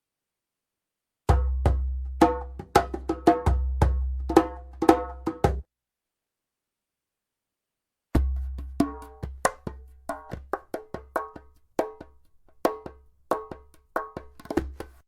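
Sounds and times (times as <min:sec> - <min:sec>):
djembe strikes: 0:01.3 - 0:05.6, 0:08.2 - 0:15.0.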